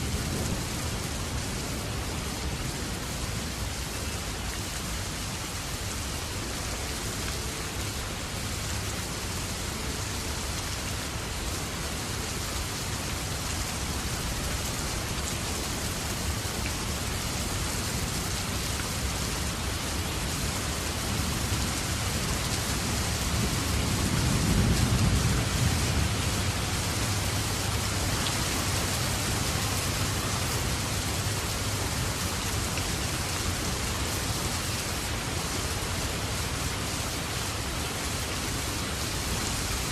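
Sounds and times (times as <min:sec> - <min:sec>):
rain falling steadily: 0:00.0 - 0:39.9.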